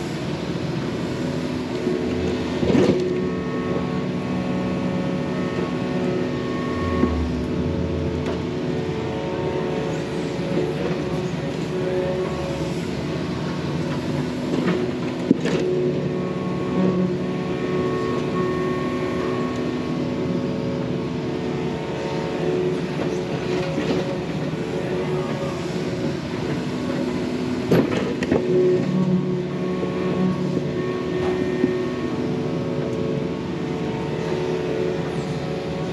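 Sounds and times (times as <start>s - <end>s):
excavator diesel engine running: 0.0s - 35.9s
sharp knock: 31.2s - 31.6s.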